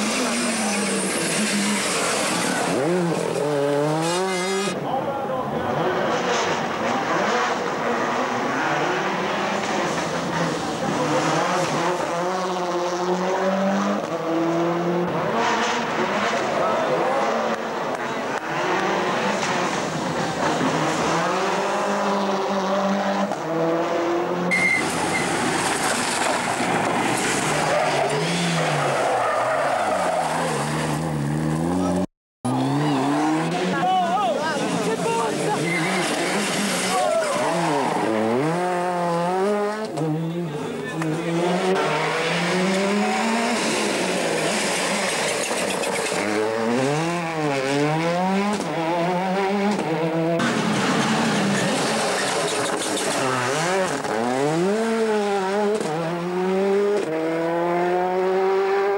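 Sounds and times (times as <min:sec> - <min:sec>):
car engine revving hard: 0:00.0 - 0:04.8, 0:29.9 - 0:33.8, 0:34.8 - 0:40.4, 0:41.0 - 0:58.9
tyres squealing: 0:34.6 - 0:38.2.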